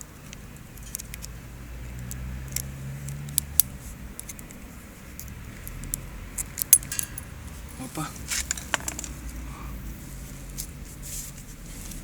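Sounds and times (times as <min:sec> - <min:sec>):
small metal clicks: 0:00.2 - 0:04.6, 0:05.2 - 0:07.6, 0:08.4 - 0:09.4.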